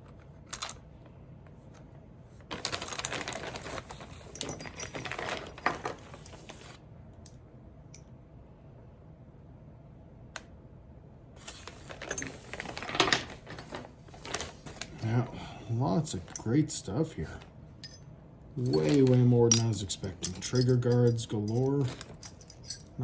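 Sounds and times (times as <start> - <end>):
packing material rustling: 2.5 - 6.8, 11.4 - 15.3
metal parts clicking together: 18.6 - 23.0.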